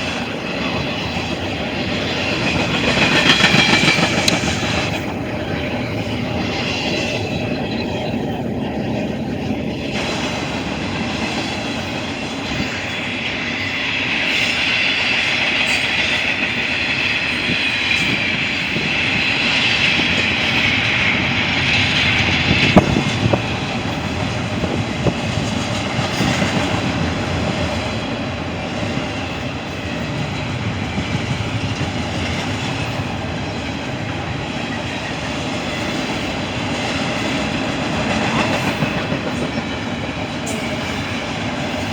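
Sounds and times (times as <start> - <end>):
freight train wheels clicking: 0.0 - 41.9
sharp clacks: 2.4 - 4.9.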